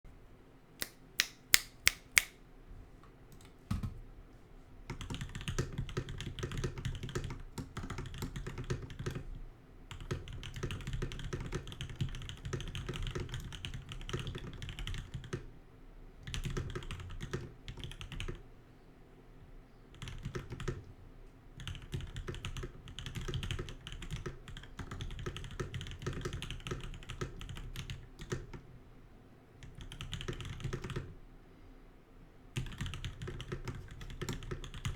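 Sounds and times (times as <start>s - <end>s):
sharp keyboard clicks: 0.8s - 2.4s, 4.9s - 9.2s, 9.9s - 15.4s, 21.6s - 28.6s, 29.6s - 31.1s, 32.6s - 34.9s
mechanical keyboard typing: 4.9s - 9.3s, 9.9s - 15.4s, 16.2s - 18.4s, 21.6s - 28.6s, 29.6s - 31.1s, 32.6s - 34.9s.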